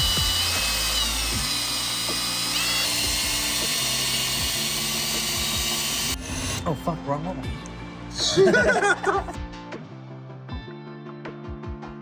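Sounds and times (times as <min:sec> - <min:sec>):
power drill whining: 0:00.0 - 0:06.7
background music: 0:00.0 - 0:12.0.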